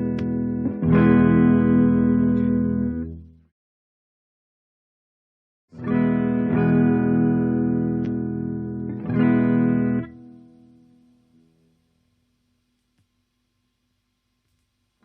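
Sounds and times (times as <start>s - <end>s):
electric guitar chord: 0.0s - 3.2s, 5.8s - 11.6s.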